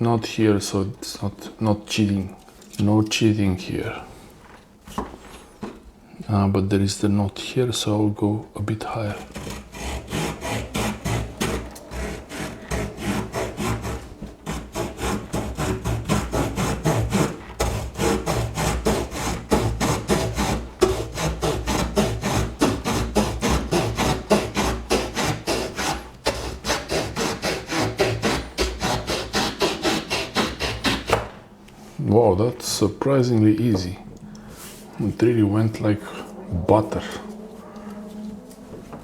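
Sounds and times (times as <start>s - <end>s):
folding saw cutting branch: 8.8s - 31.5s.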